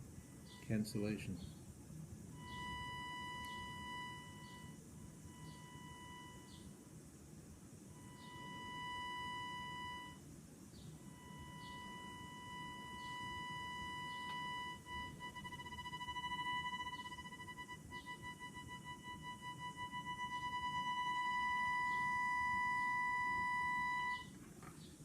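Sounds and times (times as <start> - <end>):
high-pitched electronic tone: 2.4 - 6.7, 7.9 - 10.2, 11.0 - 24.3.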